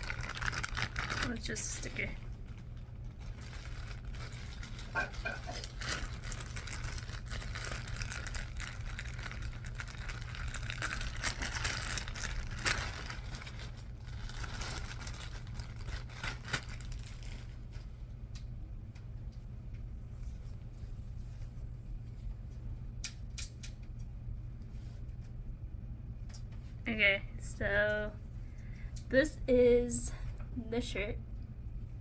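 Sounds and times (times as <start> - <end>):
packaging crinkling: 0.0 - 17.9
steady low hum: 0.0 - 32.0.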